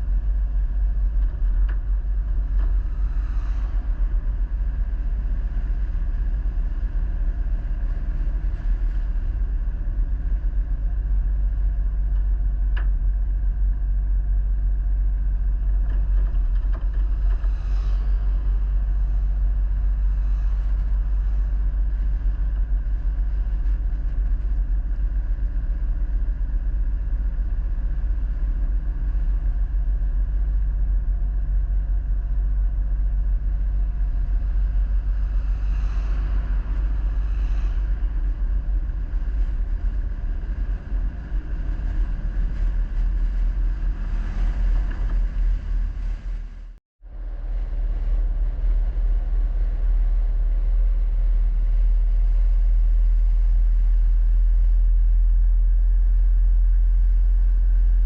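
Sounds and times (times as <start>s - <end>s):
vehicle engine and road rumble: 0.0s - 58.0s.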